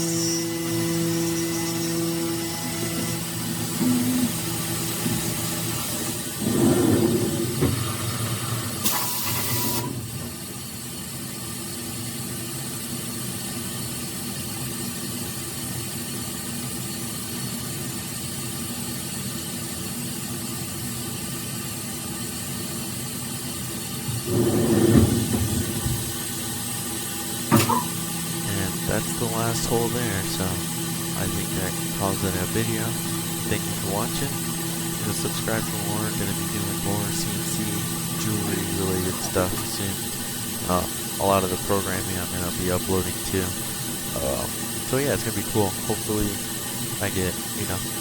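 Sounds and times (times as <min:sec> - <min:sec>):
milling machine hum: 0:00.0 - 0:11.0, 0:21.8 - 0:48.0.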